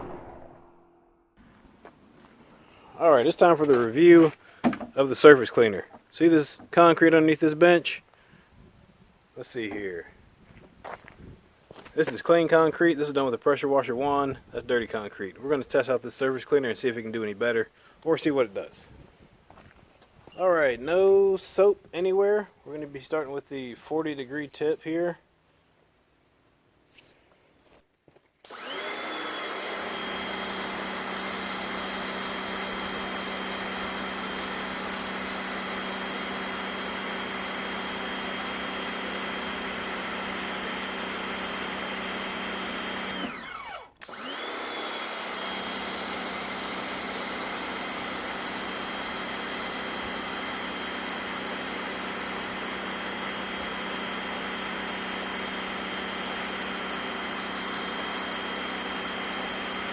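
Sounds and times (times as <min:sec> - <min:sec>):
pressure washer motor whining: 0:28.5 - 0:59.9.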